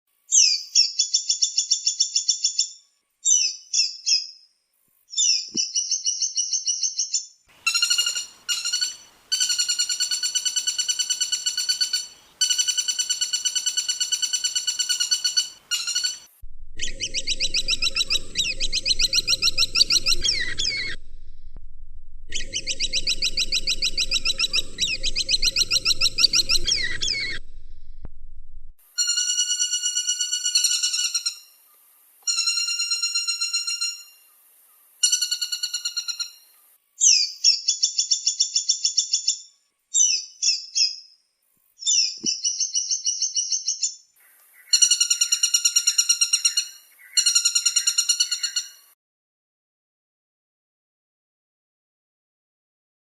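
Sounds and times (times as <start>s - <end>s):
woodpecker trills: 5.2s - 21.1s, 22.3s - 27.4s, 44.5s - 48.9s
woodpecker rattling calls: 7.6s - 21.0s, 22.3s - 27.4s, 44.6s - 48.9s
buzzy pulsed woodpecker call: 7.6s - 21.6s, 22.3s - 28.0s, 29.0s - 31.6s, 32.3s - 34.4s, 35.0s - 36.5s, 44.2s - 48.9s
low hum: 16.3s - 28.8s.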